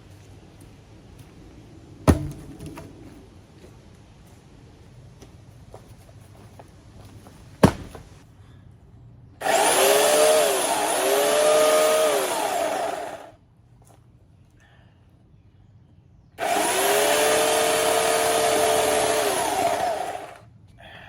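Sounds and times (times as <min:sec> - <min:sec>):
electric chainsaw cutting branch: 0:09.4 - 0:13.4, 0:16.4 - 0:20.4.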